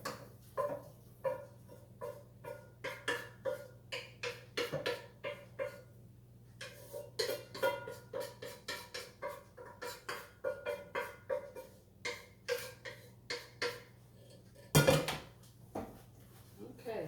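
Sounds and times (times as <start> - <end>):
metal spoon knocking on skillet: 0.0 - 5.8.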